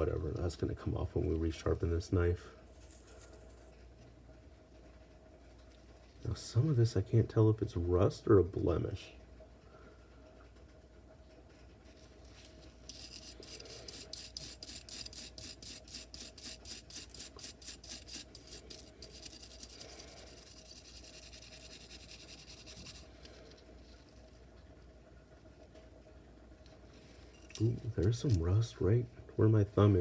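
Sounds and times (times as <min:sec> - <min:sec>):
plastic brush scrubbing steel blade: 0:12.4 - 0:24.0.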